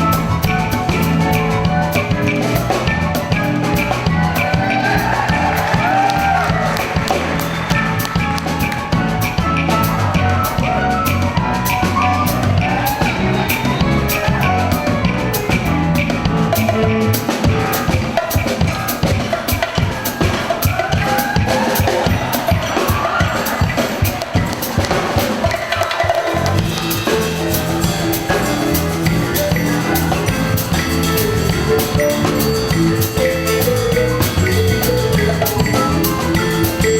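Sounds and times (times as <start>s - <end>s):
low bass line: 0.0s - 17.7s, 26.4s - 36.9s
drum kit steady beat: 0.0s - 36.9s.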